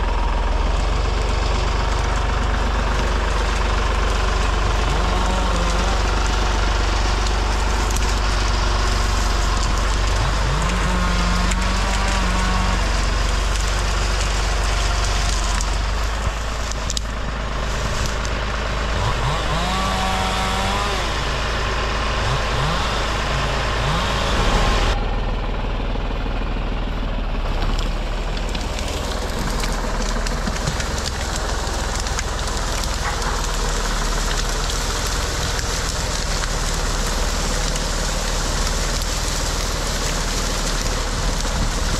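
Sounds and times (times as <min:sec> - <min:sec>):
engine droning and revving: 0:00.0 - 0:41.9.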